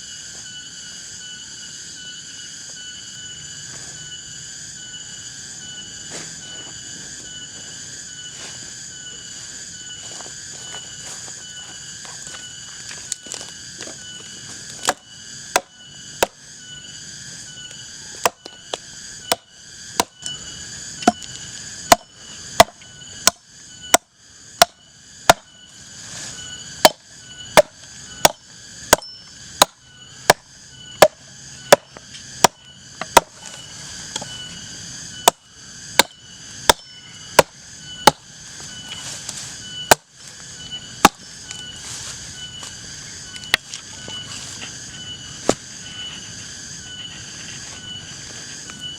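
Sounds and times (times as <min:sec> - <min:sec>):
blade chopping wood: 0:14.7 - 0:16.4, 0:18.2 - 0:20.3, 0:21.9 - 0:25.5, 0:26.8 - 0:27.0, 0:27.6 - 0:34.3, 0:35.2 - 0:35.4, 0:36.0 - 0:38.2, 0:39.9 - 0:40.1.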